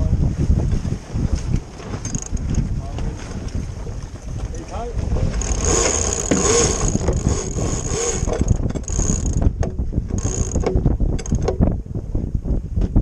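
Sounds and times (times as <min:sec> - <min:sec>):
steady low rumble: 0:00.0 - 0:13.0
rigging clicking and rattling: 0:01.6 - 0:11.7.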